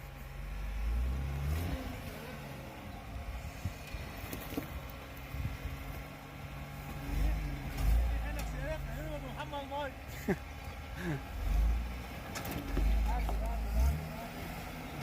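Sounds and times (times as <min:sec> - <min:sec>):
diesel truck engine driving: 0:00.0 - 0:15.0.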